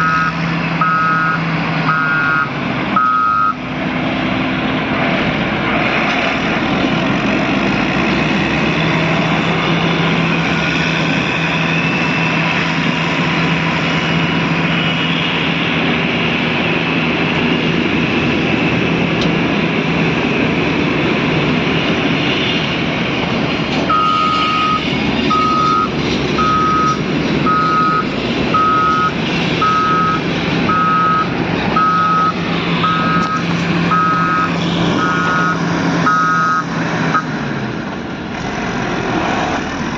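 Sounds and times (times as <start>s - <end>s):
reversing alarm beeping: 0.0s - 3.6s, 23.9s - 37.3s
diesel engine running: 0.0s - 39.9s.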